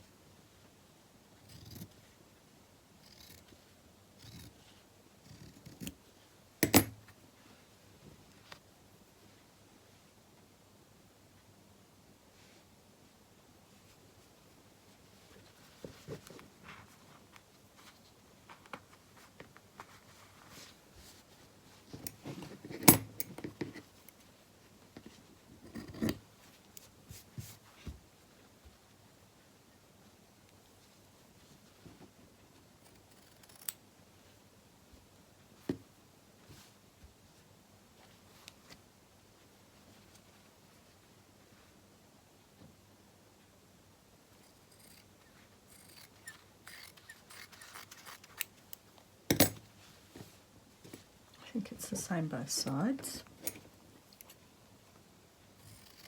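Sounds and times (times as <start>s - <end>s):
hand stitching scratching fabric: 1.4s - 2.0s, 4.2s - 4.7s, 5.3s - 6.0s, 25.6s - 26.2s, 44.4s - 48.6s, 55.6s - 56.0s.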